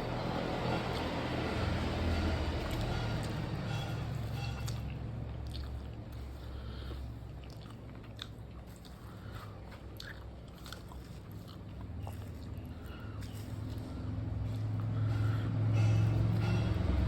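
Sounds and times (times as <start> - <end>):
person chewing food: 0.0 - 16.8.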